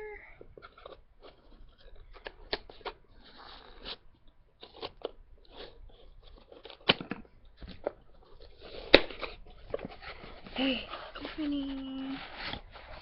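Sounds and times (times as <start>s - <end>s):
cardboard box being opened: 8.2s - 13.0s.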